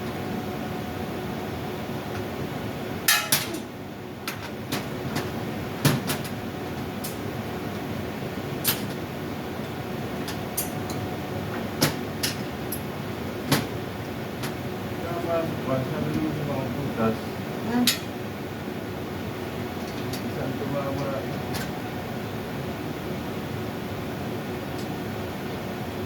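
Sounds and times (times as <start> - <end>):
steady machinery hum: 0.0 - 26.0.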